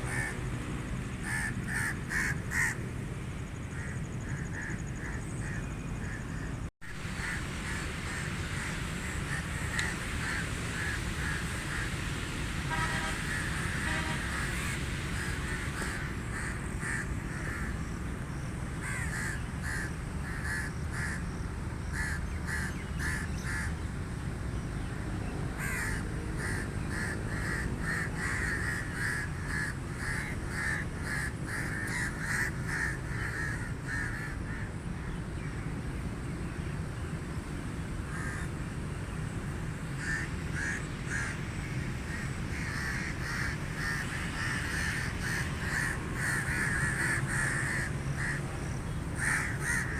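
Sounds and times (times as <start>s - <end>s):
crows cawing: 0.0s - 0.4s, 1.2s - 2.8s, 3.7s - 12.0s, 12.8s - 17.8s, 18.8s - 21.3s, 22.0s - 23.7s, 25.6s - 34.7s, 38.1s - 38.5s, 40.0s - 41.4s, 42.0s - 49.9s.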